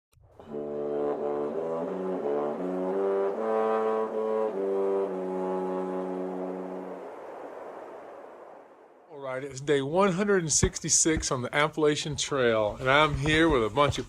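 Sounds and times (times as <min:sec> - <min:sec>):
brass chords: 0:00.4 - 0:07.3.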